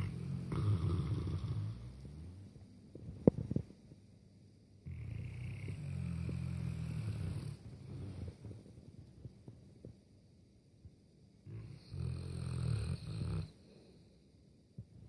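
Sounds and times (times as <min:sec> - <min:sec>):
dog snoring: 0:00.0 - 0:02.6, 0:04.8 - 0:08.6, 0:11.4 - 0:13.8
quiet breathing: 0:04.9 - 0:09.7, 0:11.5 - 0:15.0.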